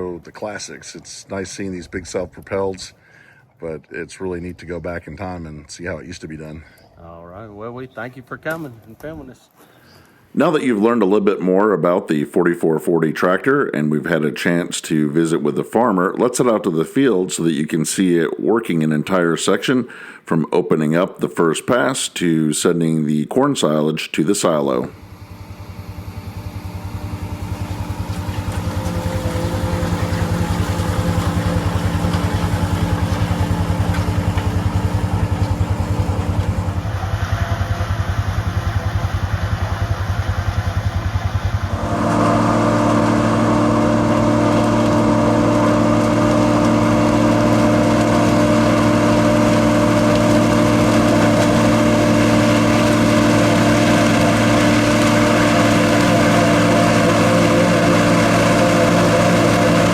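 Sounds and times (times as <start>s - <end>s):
tractor diesel engine running: 24.7s - 59.9s
forage harvester chopping corn: 24.9s - 59.9s.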